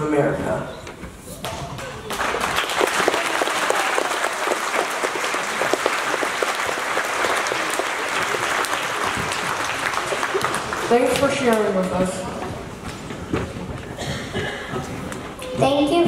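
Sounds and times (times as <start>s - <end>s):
audience applauding: 1.4s - 12.1s.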